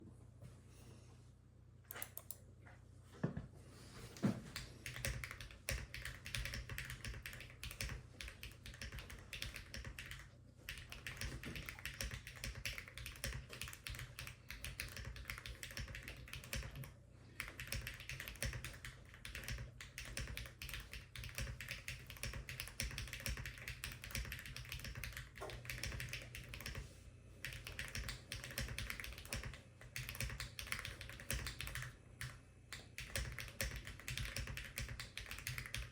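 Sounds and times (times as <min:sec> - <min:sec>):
mechanical keyboard typing: 0:04.6 - 0:26.8, 0:27.4 - 0:35.9.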